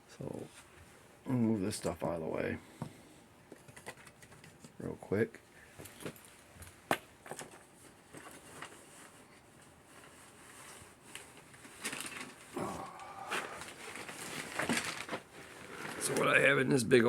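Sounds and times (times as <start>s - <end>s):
rustling and handling: 2.9s - 5.1s, 5.7s - 16.7s
plastic parts clicking and knocking: 3.5s - 4.8s.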